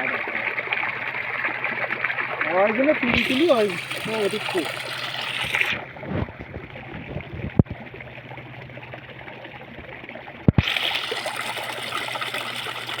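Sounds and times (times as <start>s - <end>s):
water trickling: 0.0s - 13.0s
rushing water hiss: 3.2s - 5.7s.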